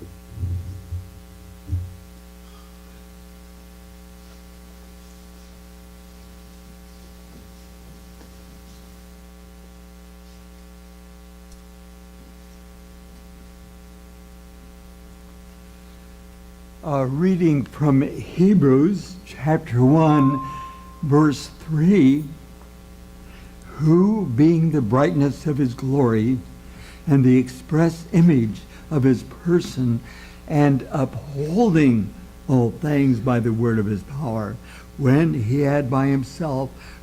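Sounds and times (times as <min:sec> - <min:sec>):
electrical mains hum: 0:00.0 - 0:37.0
low thumps: 0:00.3 - 0:02.0.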